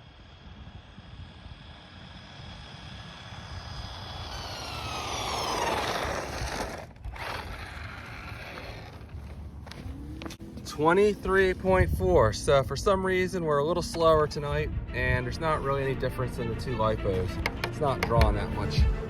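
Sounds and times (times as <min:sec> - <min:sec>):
rc truck motor whining: 0:00.0 - 0:10.4.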